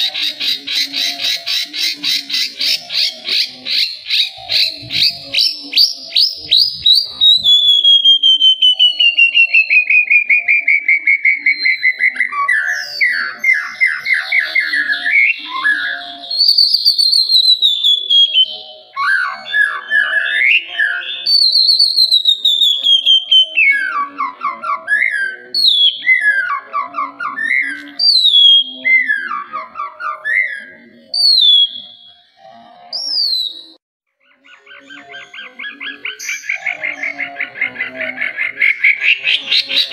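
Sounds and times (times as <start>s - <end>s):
songbird whistling and trilling: 0.0s - 37.3s.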